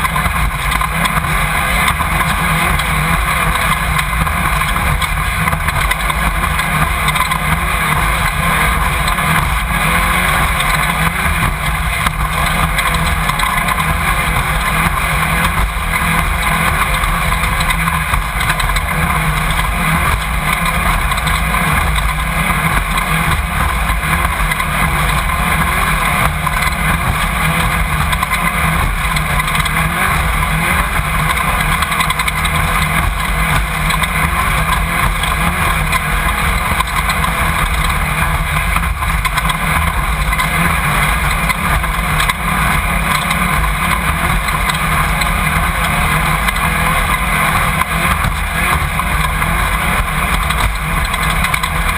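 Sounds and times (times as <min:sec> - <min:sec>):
vehicle engine running hard: 0:00.0 - 0:51.9.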